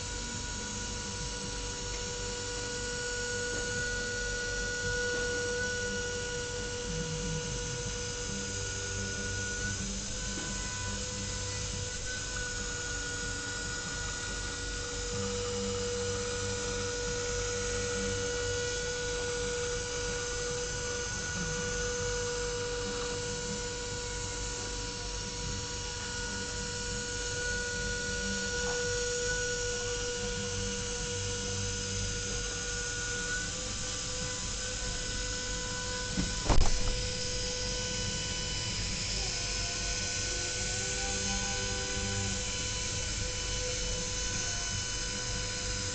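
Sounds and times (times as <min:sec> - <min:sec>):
router spindle milling metal: 0:07.9 - 0:45.9
sharp knock: 0:36.2 - 0:37.0.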